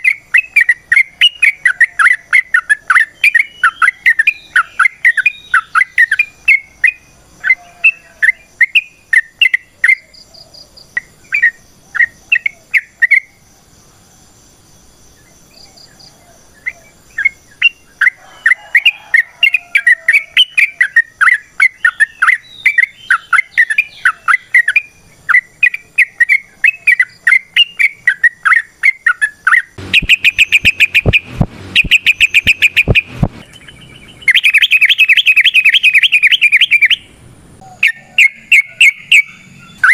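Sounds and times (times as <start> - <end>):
bulbul warbling song: 0.0 - 10.2, 19.8 - 37.2, 37.8 - 39.9.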